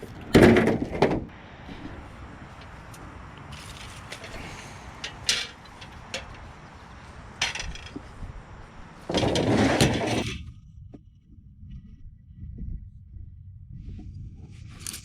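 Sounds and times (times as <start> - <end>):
loud scraping rattle: 3.5 - 6.6, 7.4 - 8.0, 9.0 - 10.4
scrap metal knocks and clinks: 3.5 - 6.6, 7.4 - 8.1.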